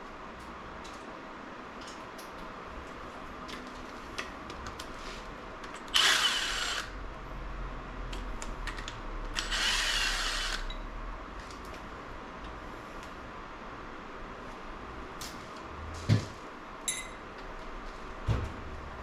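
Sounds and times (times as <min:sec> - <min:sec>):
handheld power tool running: 0:05.9 - 0:06.9, 0:09.4 - 0:10.7.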